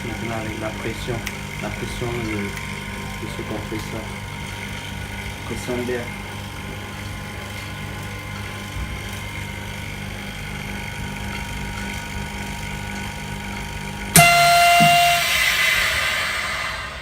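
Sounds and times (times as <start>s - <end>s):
vacuum pump humming: 0.0s - 17.0s
loud beep: 14.2s - 17.0s
rush of hissing air: 14.9s - 17.0s.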